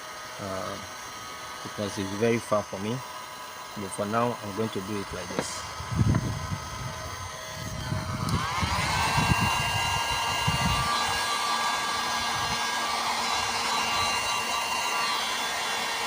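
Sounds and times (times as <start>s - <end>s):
hot-air blower motor whine: 0.0s - 16.0s.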